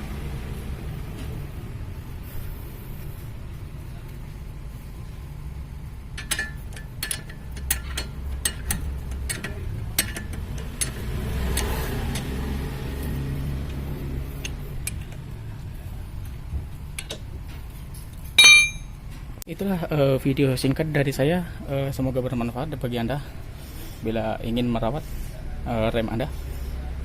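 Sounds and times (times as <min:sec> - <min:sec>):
metallic clicks of tools and parts: 0:06.2 - 0:11.0, 0:18.4 - 0:18.8.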